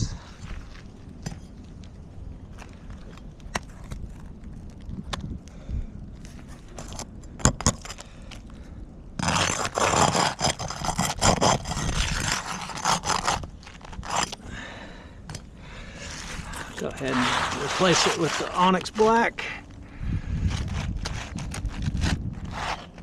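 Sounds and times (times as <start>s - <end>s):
roof shingles scraping: 9.2s - 14.3s, 16.0s - 19.5s, 20.6s - 23.0s.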